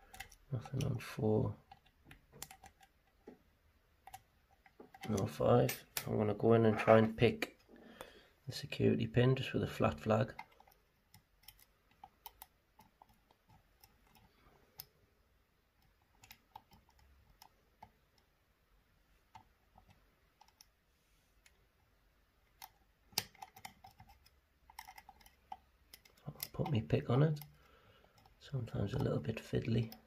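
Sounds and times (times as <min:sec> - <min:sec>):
lock pick clicking in lock: 0:22.6 - 0:26.6.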